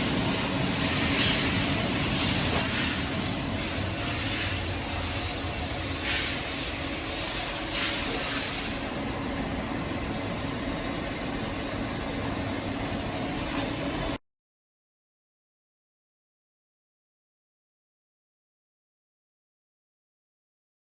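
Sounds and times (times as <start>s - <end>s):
machine humming and hissing: 0.0s - 14.2s
short hissing bursts: 7.2s - 8.8s.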